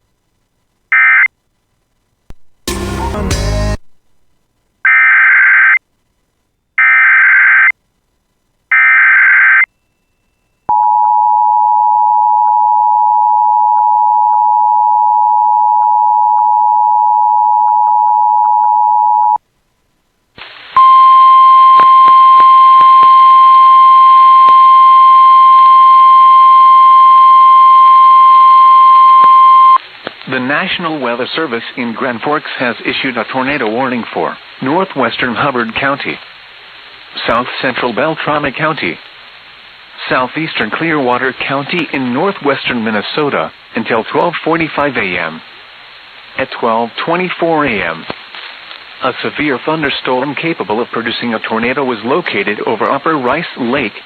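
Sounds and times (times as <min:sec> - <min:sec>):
static clicks: 0:19.8 - 0:21.0, 0:21.6 - 0:25.1, 0:29.2 - 0:30.5, 0:33.0 - 0:49.8, 0:52.2 - 0:54.0
radio hiss: 0:20.3 - 0:25.5, 0:29.2 - 0:54.0.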